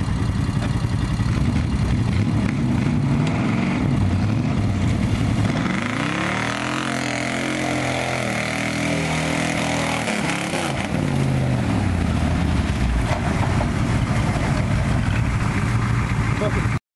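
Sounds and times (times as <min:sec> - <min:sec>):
truck engine revving: 0:01.1 - 0:16.8.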